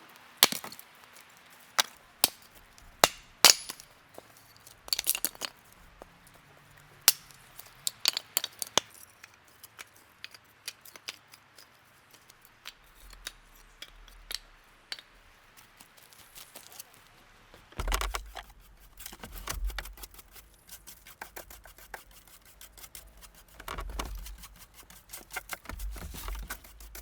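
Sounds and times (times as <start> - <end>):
dry wood snapping: 0.4 - 0.8, 1.8 - 3.9, 4.9 - 5.5, 7.1 - 8.9.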